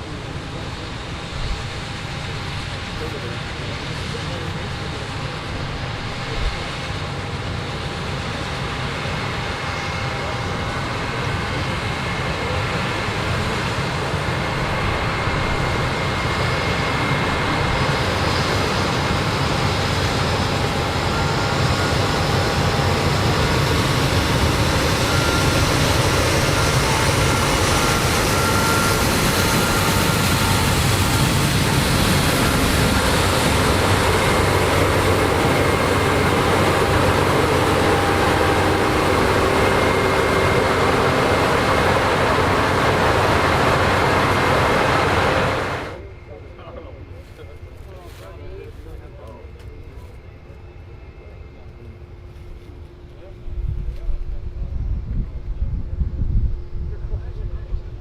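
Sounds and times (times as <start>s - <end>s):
harvest machinery running: 23.5s - 46.0s.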